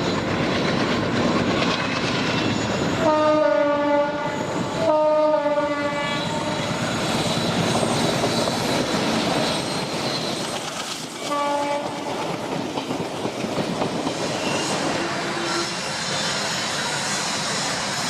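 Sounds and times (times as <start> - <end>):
train clickety-clack on track: 0.0 - 18.0
locomotive horn: 3.0 - 6.6, 11.2 - 12.1, 14.9 - 15.8.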